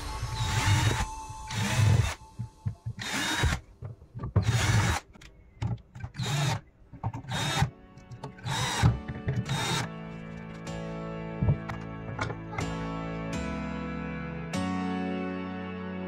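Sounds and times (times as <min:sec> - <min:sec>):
handheld power tool bursts: 0:00.1 - 0:05.3, 0:06.0 - 0:06.6, 0:07.2 - 0:09.9.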